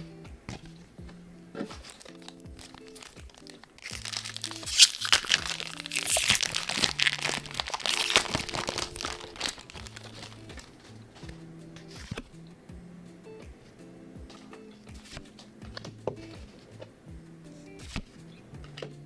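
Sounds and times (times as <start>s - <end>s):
background music: 0.0s - 19.0s
foil wrapper crinkling and tearing: 2.2s - 11.0s.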